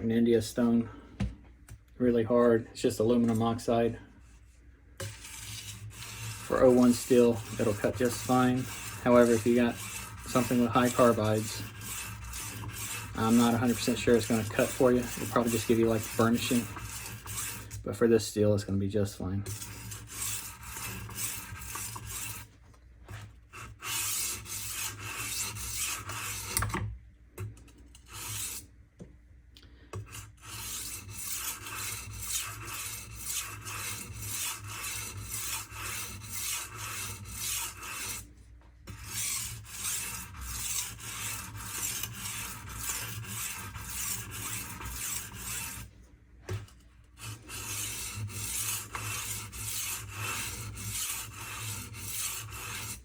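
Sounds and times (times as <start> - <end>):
knife scraping on sharpening stone: 5.0 - 17.8, 19.5 - 22.5, 30.1 - 38.2, 38.9 - 45.8, 47.2 - 53.0.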